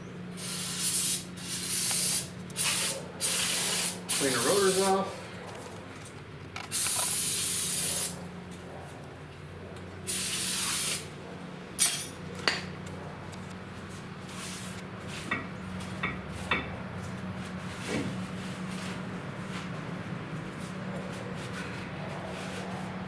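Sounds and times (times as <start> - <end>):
aerosol spray hissing: 0.4 - 5.0, 6.7 - 8.2, 10.1 - 11.0.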